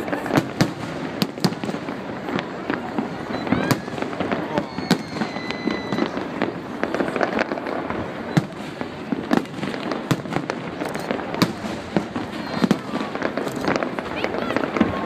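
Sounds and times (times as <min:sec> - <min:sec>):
firework crackle: 0:00.0 - 0:15.0
firework shells bursting: 0:03.7 - 0:14.0.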